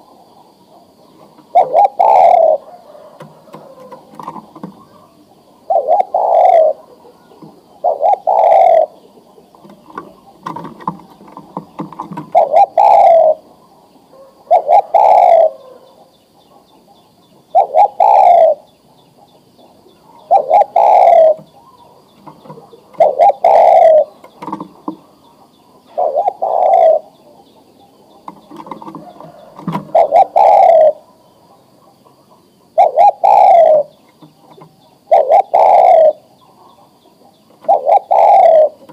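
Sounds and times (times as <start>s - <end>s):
dove cooing: 0.0s - 38.9s.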